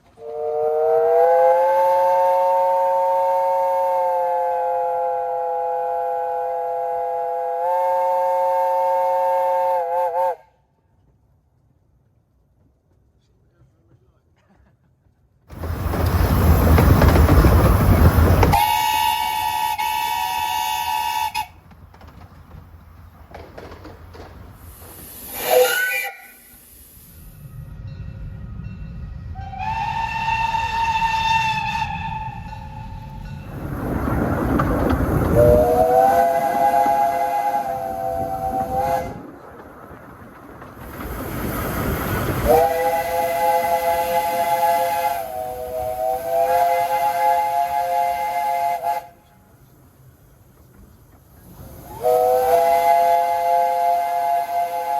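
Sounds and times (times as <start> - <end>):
steam locomotive whistle blast: 0.1 - 10.6, 18.4 - 21.6, 25.2 - 27.4, 29.2 - 33.4, 35.3 - 39.3, 42.4 - 49.6, 51.8 - 54.9
hiss with rising tones: 24.6 - 28.5.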